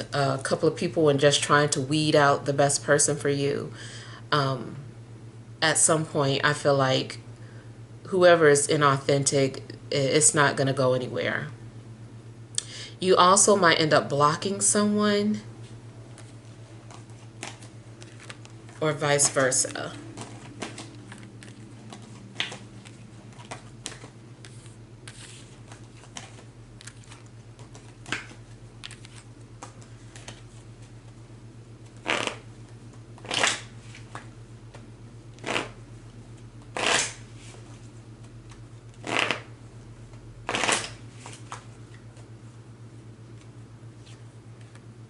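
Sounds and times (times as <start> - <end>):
steady low hum: 0.0 - 45.0
cards shuffling: 16.1 - 31.2, 31.8 - 32.4, 33.2 - 34.8, 38.4 - 39.5, 40.5 - 42.3
cards clicking and flicking: 20.1 - 30.4.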